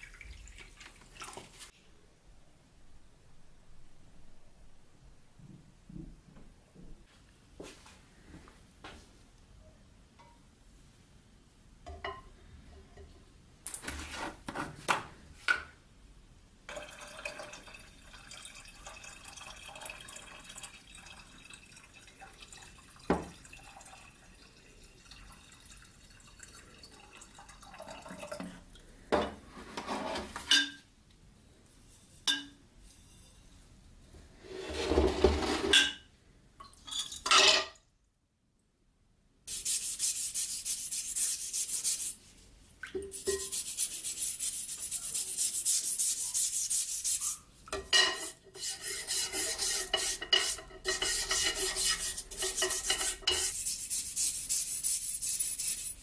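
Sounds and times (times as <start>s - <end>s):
liquid sounds: 0.0s - 1.7s
steady rubbing or scraping: 34.2s - 35.8s, 48.1s - 56.0s.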